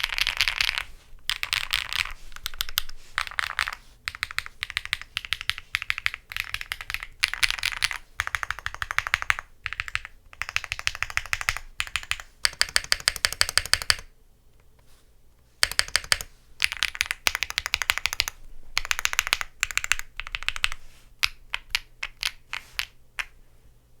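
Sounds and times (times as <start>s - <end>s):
typing on mechanical keyboard: 0.0s - 14.1s, 15.6s - 23.0s.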